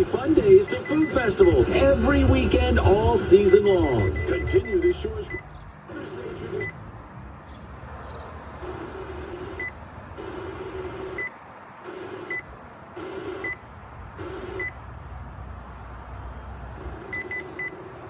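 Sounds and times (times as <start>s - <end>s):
short high electronic beeps: 0.6s - 1.6s, 3.5s - 5.4s, 9.6s - 9.8s, 14.5s - 14.8s, 17.1s - 17.8s.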